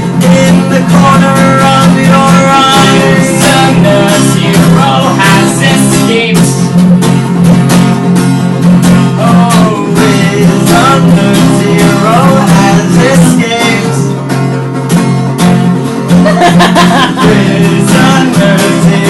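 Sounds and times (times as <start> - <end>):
person singing: 0.0 - 6.7, 9.2 - 14.2, 16.2 - 19.0
plucked acoustic guitar: 0.0 - 19.0.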